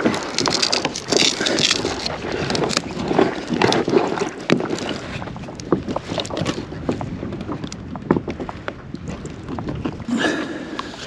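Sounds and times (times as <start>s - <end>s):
gear being handled: 0.0s - 6.6s
water: 0.0s - 11.0s
wind: 0.0s - 11.0s.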